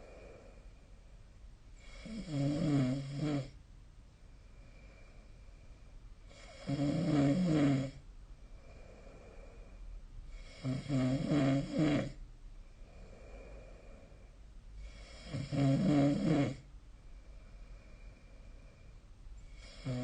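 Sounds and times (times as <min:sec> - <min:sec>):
soft breathing: 0:00.0 - 0:02.2, 0:04.1 - 0:06.6, 0:08.0 - 0:10.6, 0:12.5 - 0:15.5, 0:16.6 - 0:20.0
person snoring: 0:01.8 - 0:03.6, 0:06.3 - 0:08.0, 0:10.4 - 0:12.2, 0:14.8 - 0:16.6, 0:19.5 - 0:20.0.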